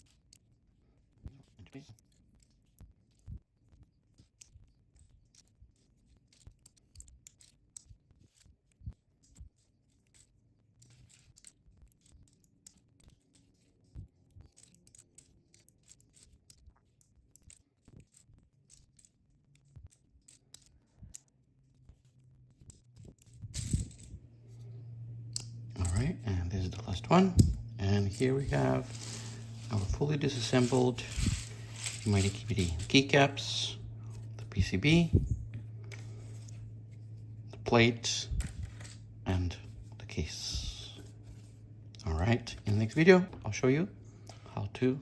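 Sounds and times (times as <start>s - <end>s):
plastic keycaps clicking and scraping: 1.4s - 21.4s, 25.3s - 36.6s.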